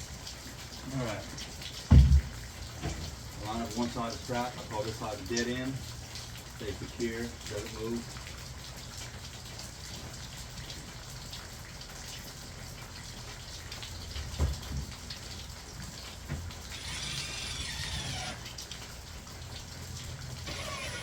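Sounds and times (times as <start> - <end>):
steady rain falling: 0.0 - 21.0
dull thump: 1.9 - 3.0
high wavering whir: 20.5 - 21.0.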